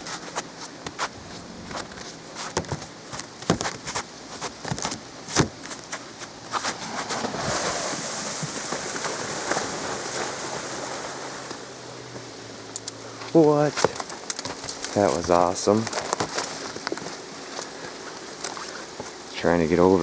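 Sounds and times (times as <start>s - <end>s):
steady rushing noise: 1.0s - 2.9s.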